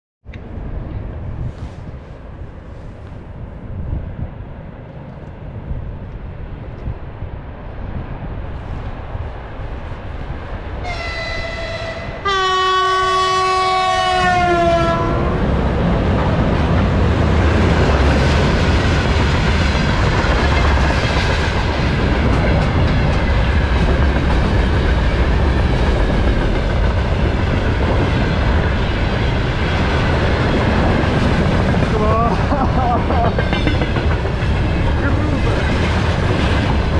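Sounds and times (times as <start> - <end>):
train wheels rumbling on rails: 0.3 - 36.9
locomotive horn blast: 10.8 - 15.4.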